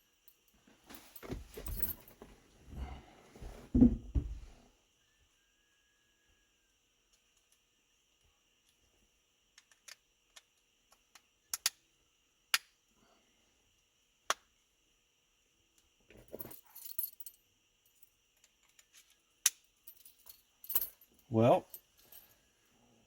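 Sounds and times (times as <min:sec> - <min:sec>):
keys jangling: 0:01.0 - 0:02.2
small parts clicking and tapping: 0:09.5 - 0:11.9, 0:18.0 - 0:21.0.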